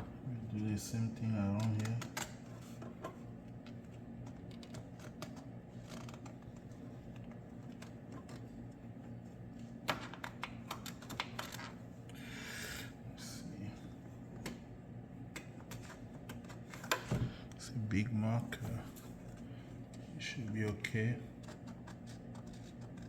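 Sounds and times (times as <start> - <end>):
steady low hum: 0.0 - 23.0
marker clicking and scratching: 21.4 - 23.0.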